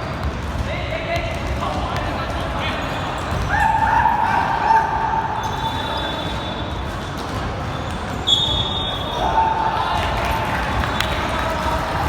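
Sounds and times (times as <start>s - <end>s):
basketball bouncing on court floor: 0.0s - 2.6s.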